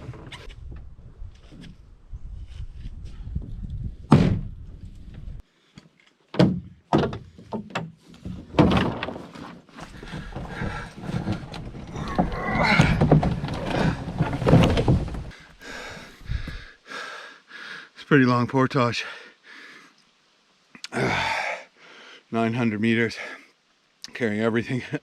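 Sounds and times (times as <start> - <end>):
canoe and gear knocking: 6.4 - 15.4
footsteps on trail: 9.7 - 16.6.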